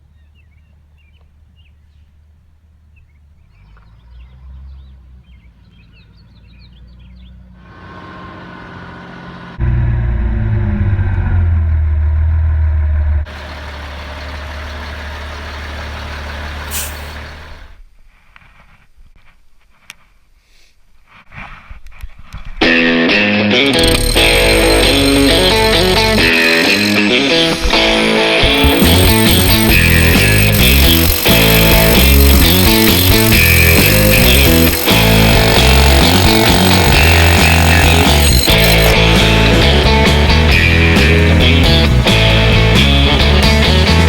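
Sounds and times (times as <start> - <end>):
heavy truck engine rumbling: 2.2 - 17.8, 23.8 - 44.0.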